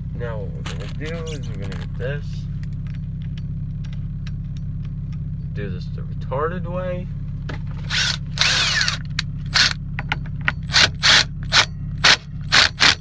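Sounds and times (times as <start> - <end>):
low hum: 0.0 - 13.0
ratchet wrench strokes: 7.9 - 9.8, 10.5 - 13.0.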